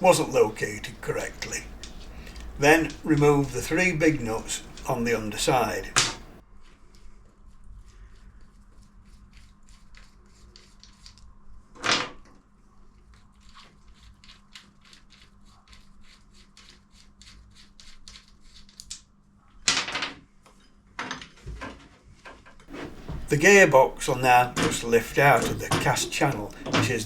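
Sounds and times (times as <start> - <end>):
loud knocks: 22.7 - 27.0.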